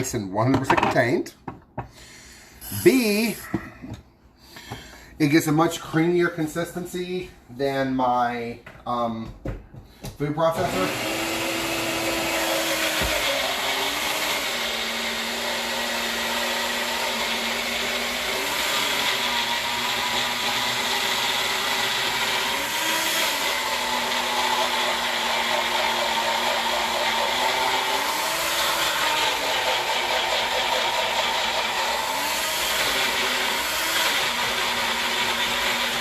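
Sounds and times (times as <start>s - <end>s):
blender motor running: 10.5s - 36.0s.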